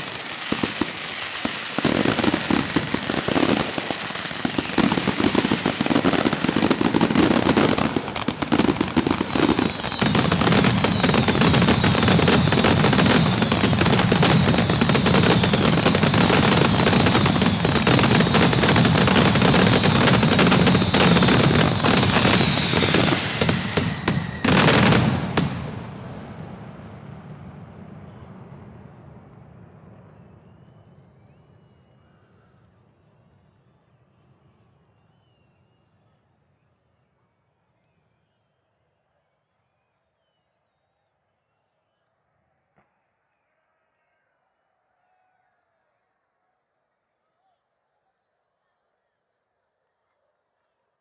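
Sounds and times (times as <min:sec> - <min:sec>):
loud firework burst: 0:00.0 - 0:30.2
fireworks crackling and banging: 0:00.0 - 0:30.3
falling whistles of fireworks: 0:00.0 - 0:42.1.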